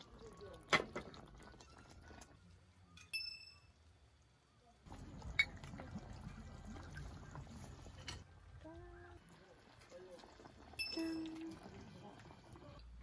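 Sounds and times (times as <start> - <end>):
glass clinking: 3.0 - 3.7
liquid pouring into a glass: 4.9 - 8.0.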